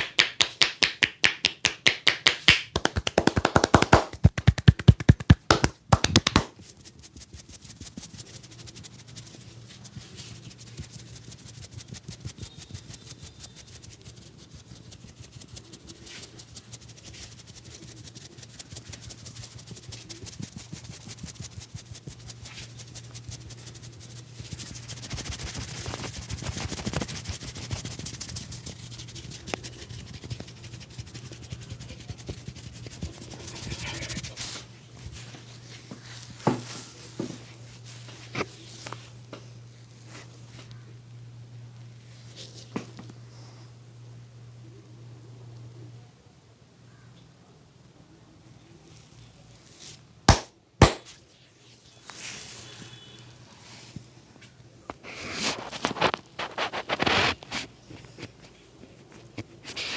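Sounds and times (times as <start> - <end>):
hands rubbing over skin: 0.0 - 39.2, 55.0 - 59.9
low steady hum: 2.0 - 59.9.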